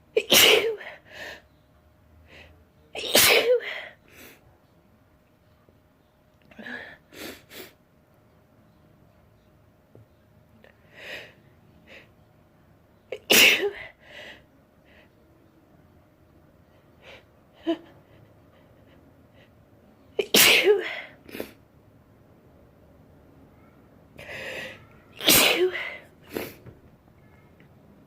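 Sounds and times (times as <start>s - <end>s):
person sneezing loudly: 3.0s - 3.7s, 20.2s - 21.6s, 24.3s - 26.6s
breathy sounds: 24.2s - 25.0s.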